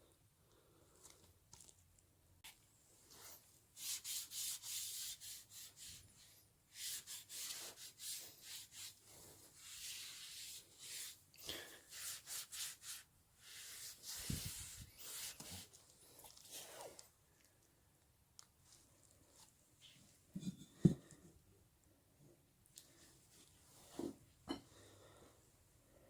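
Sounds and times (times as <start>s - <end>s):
rubbing strokes on a surface: 3.1s - 15.8s.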